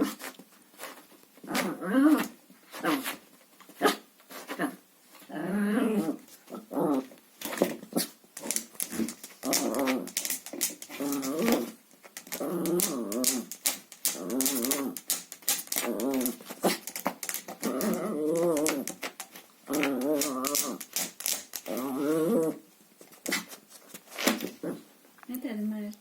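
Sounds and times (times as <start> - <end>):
small dog growling: 1.4 - 3.1, 4.5 - 7.2, 7.9 - 22.6, 24.5 - 24.8.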